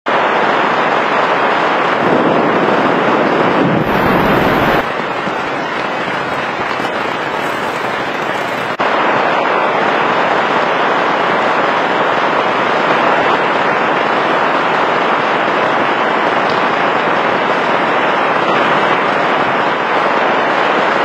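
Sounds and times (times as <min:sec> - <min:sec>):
heavy rain pouring: 0:00.1 - 0:21.0
deep rumble: 0:02.1 - 0:08.8.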